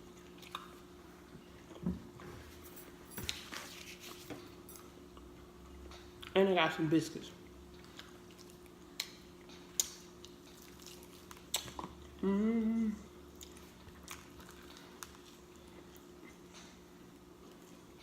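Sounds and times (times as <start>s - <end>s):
wet chewing and smacking: 0.0s - 1.0s, 7.4s - 12.2s, 13.3s - 18.0s.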